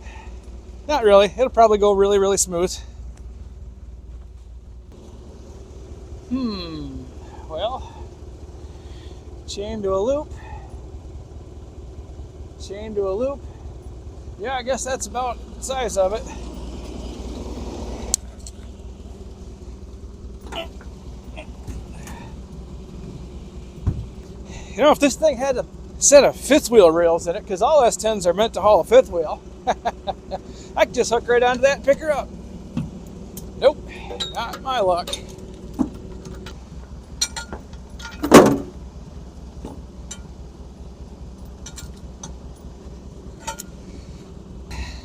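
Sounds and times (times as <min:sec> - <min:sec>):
forklift engine idling: 0:00.0 - 0:45.0
low steady hum: 0:00.0 - 0:45.0
chain clinking: 0:33.3 - 0:38.4, 0:39.7 - 0:40.6, 0:41.3 - 0:43.9
loud metallic clank: 0:37.2 - 0:38.8.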